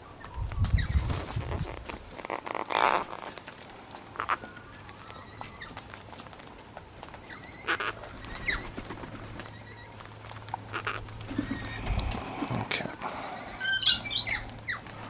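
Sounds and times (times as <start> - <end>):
beaks clicking on seed: 1.6 - 15.0
soft short bird calls: 10.7 - 15.0.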